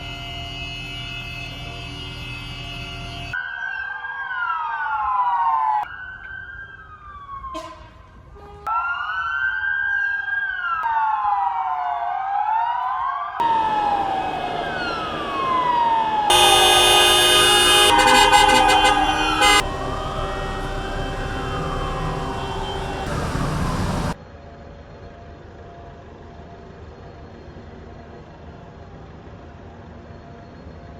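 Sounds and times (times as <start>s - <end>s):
loud steady horn blasts: 0.0s - 3.4s, 16.3s - 24.2s
wailing sirens: 3.2s - 7.8s, 8.7s - 24.2s.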